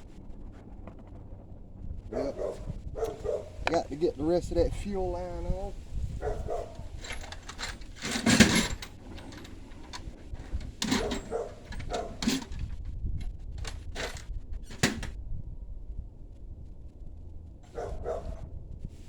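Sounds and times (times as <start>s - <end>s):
low steady rumble: 0.0s - 19.0s
metal tools clinking and knocking: 6.6s - 12.8s.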